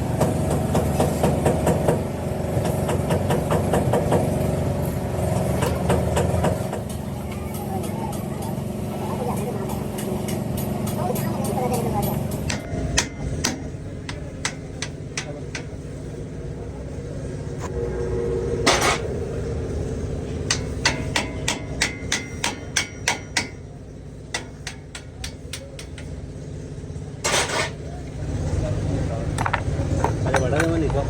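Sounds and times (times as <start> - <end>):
steady low hum: 4.4 - 27.2
hand hammer striking: 10.0 - 15.8, 20.4 - 23.6, 24.3 - 26.1.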